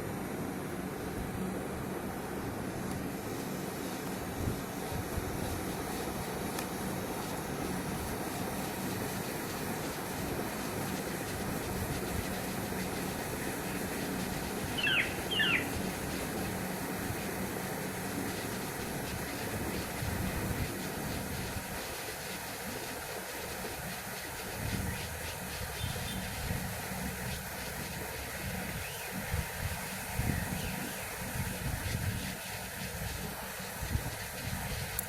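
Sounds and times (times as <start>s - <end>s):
steady background hiss: 0.0s - 35.0s.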